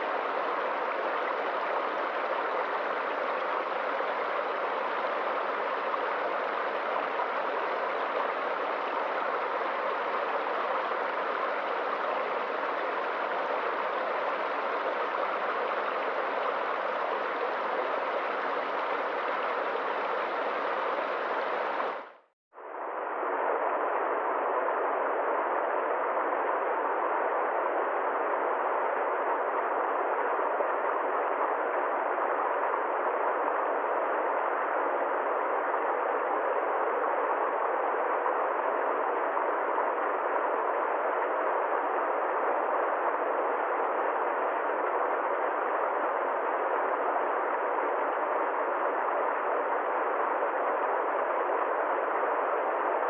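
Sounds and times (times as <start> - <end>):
river water flowing: 0.0 - 22.1.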